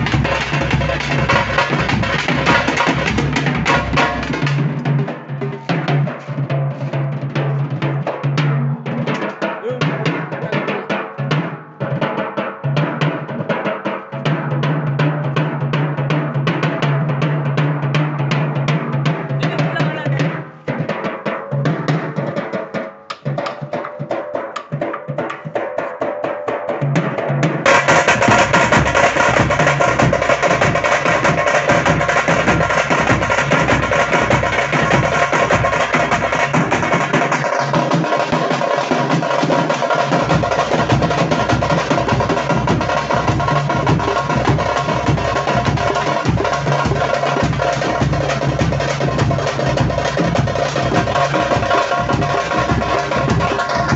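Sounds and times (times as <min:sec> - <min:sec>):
frame drums fast rhythm: 0:00.0 - 0:53.9.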